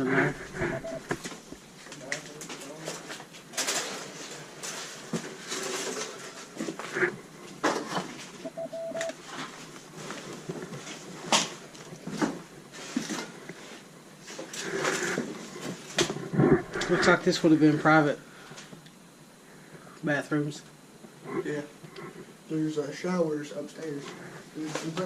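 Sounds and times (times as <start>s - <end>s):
short steady tone: 0.5s - 1.1s.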